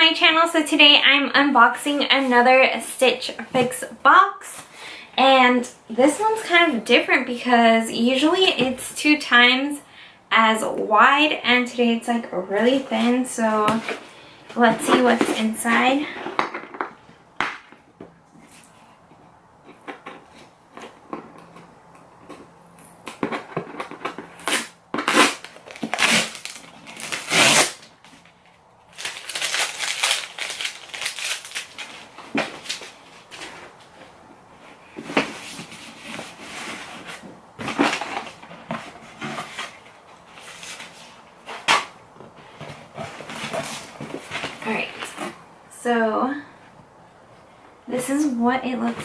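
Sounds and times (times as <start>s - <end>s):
cardboard packaging crinkling: 19.8s - 45.4s.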